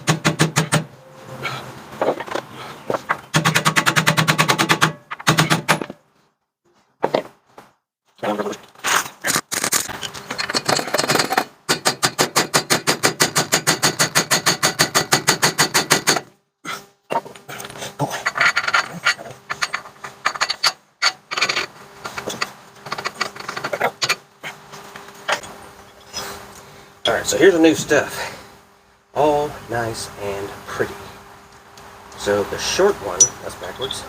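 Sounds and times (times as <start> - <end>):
metal knocks clanks and scrapes: 17.6 - 24.2.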